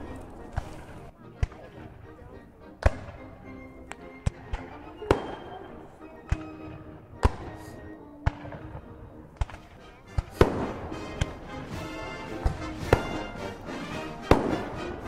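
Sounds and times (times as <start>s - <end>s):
musket shots: 9.4s - 11.4s, 12.3s - 13.4s, 14.2s - 15.0s.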